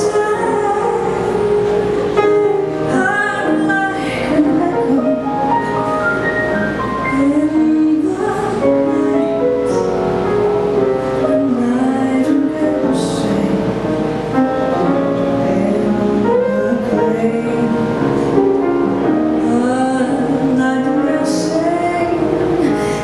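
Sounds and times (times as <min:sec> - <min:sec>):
person singing with accompaniment: 0:11.1 - 0:23.0.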